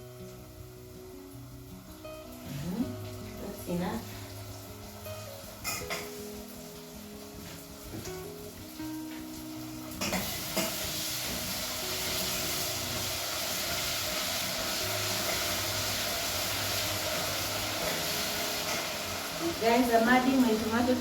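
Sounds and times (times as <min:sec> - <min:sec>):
paste sizzling in hot oil: 0:00.0 - 0:21.0.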